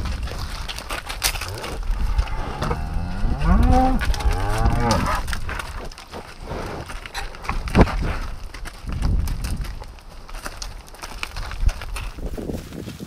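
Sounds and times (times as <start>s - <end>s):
cow mooing: 1.5s - 5.3s.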